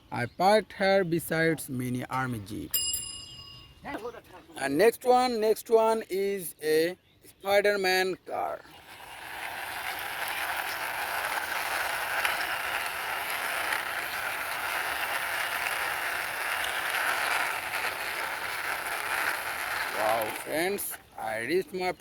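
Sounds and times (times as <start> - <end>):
toy car wheels rolling: 8.7 - 22.0.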